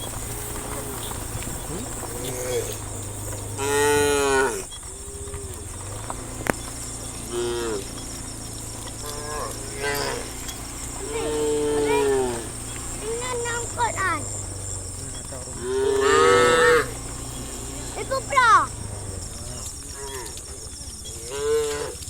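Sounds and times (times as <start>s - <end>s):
cows mooing: 0.0s - 22.0s.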